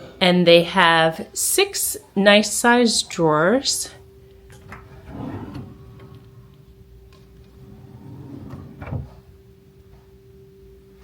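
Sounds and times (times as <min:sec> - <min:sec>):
steady low hum: 0:00.0 - 0:11.0
drawer sliding open: 0:04.6 - 0:09.4
drawer knocking shut: 0:07.6 - 0:09.3.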